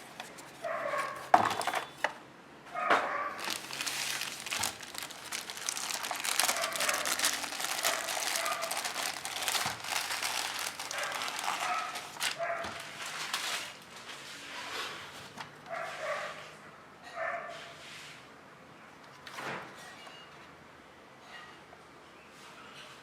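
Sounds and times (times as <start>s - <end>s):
packaging rustling and crinkling: 0.0s - 2.1s, 3.3s - 14.4s.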